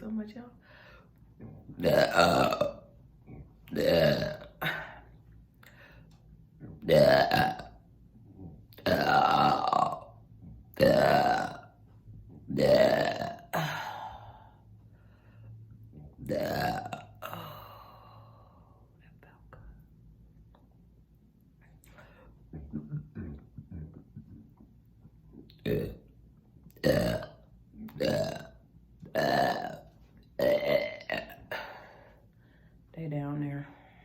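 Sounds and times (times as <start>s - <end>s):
person burping loudly: 1.6s - 5.1s, 6.8s - 7.8s, 8.7s - 11.8s, 12.5s - 14.5s, 16.2s - 18.2s, 25.5s - 26.0s, 26.7s - 32.1s.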